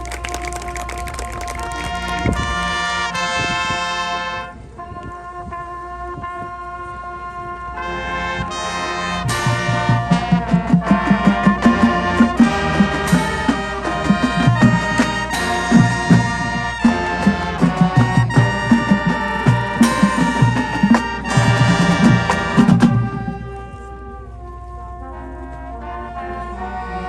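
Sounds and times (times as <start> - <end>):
marching band brass: 5.2 - 27.0
drums beating steady rhythm: 15.9 - 22.2.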